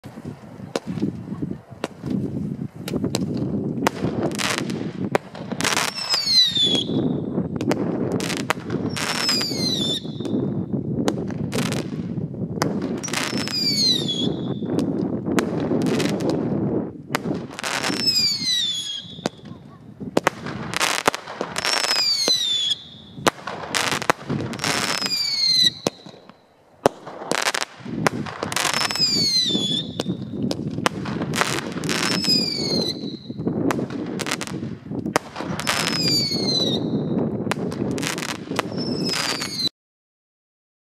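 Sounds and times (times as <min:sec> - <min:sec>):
firework bangs: 0:00.1 - 0:39.7
falling firework whistle: 0:05.6 - 0:07.3, 0:08.8 - 0:10.5, 0:13.0 - 0:14.8, 0:17.6 - 0:19.5, 0:21.6 - 0:26.4, 0:28.5 - 0:30.2, 0:31.5 - 0:33.5, 0:35.5 - 0:37.2, 0:38.2 - 0:39.7.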